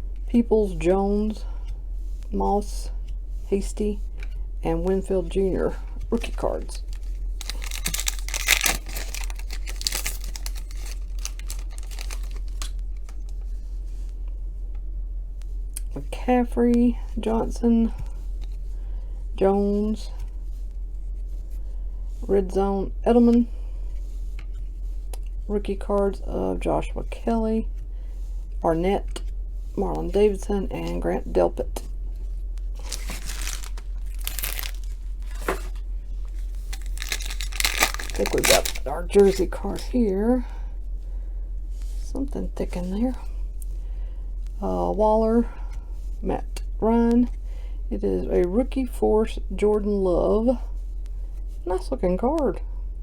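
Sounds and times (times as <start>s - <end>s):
cards rustling and clicking: 6.0s - 13.5s, 32.8s - 39.9s
foil wrapper tearing: 6.2s - 13.2s, 32.8s - 39.9s.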